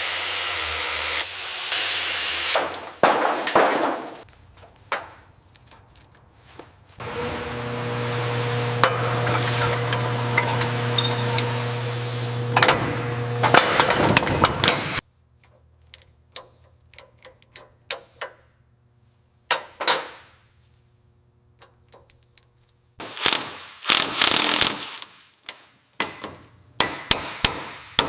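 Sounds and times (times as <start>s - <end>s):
motor-driven tool humming: 7.0s - 15.0s.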